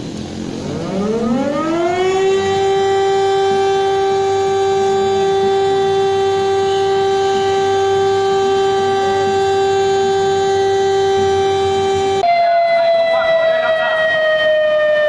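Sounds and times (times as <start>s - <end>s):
emergency siren steady tone: 0.0s - 15.0s.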